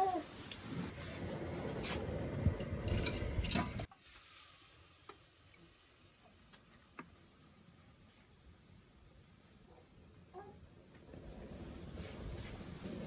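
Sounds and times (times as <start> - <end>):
faint hiss: 0.0 - 13.0
food sizzling in a pot: 0.0 - 13.0.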